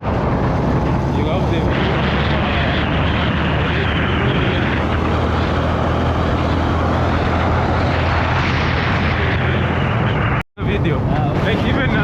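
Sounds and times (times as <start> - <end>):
vehicle driving on road: 0.0 - 12.0.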